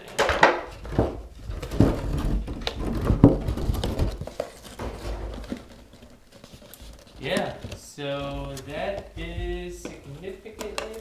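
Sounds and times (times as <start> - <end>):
packaging rustling: 0.0 - 11.0
plastic model knocking and clicking: 9.8 - 11.0.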